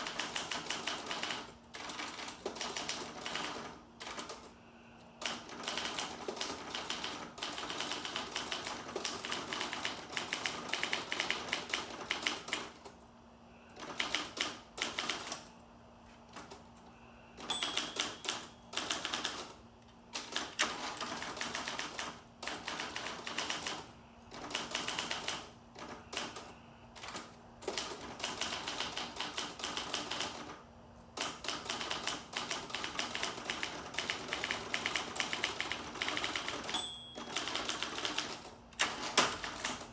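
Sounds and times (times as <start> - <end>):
typewriter typing: 0.0 - 4.5, 5.2 - 13.0, 13.8 - 15.5, 17.4 - 30.6, 31.2 - 39.9
typewriter bell ring: 17.4 - 19.3, 36.0 - 38.3.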